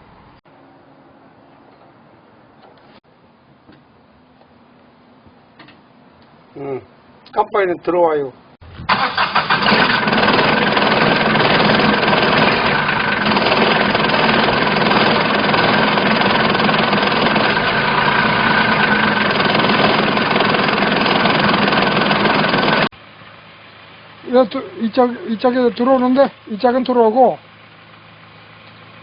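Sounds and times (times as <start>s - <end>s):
utility vehicle engine running: 8.9s - 29.0s.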